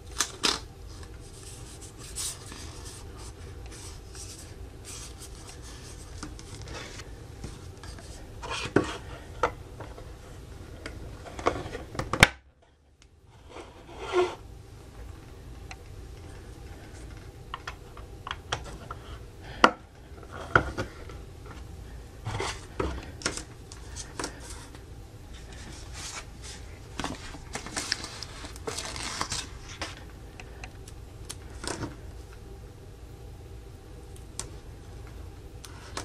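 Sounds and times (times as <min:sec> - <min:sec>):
soft handling noise: 0:20.0 - 0:30.2.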